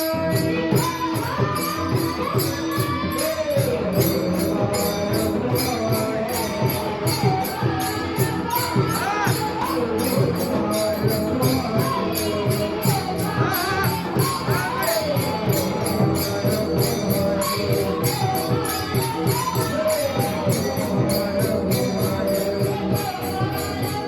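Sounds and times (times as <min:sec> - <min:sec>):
hand drum: 0:00.0 - 0:24.0
voices singing devotional song: 0:00.0 - 0:24.0.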